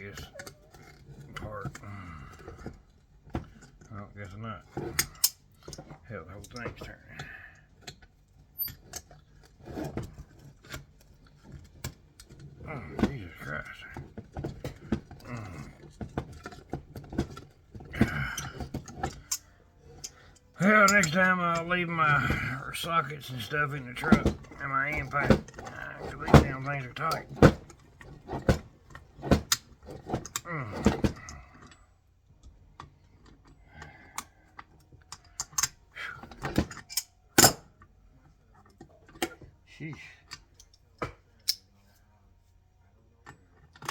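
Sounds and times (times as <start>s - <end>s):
person straining: 1.8s - 2.5s, 15.2s - 15.9s, 17.9s - 18.7s, 22.1s - 22.7s, 30.4s - 31.6s.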